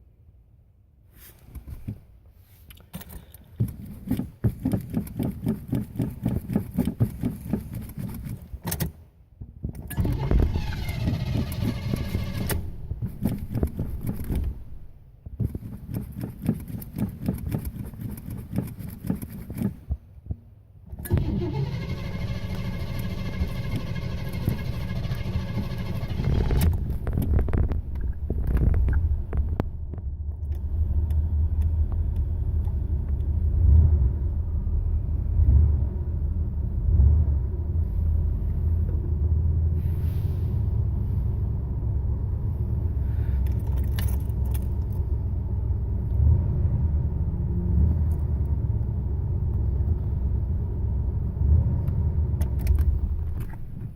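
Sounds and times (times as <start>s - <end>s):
car starter cranking: 9.8s - 14.8s, 20.9s - 27.2s
car engine running: 9.9s - 15.0s, 21.1s - 29.6s.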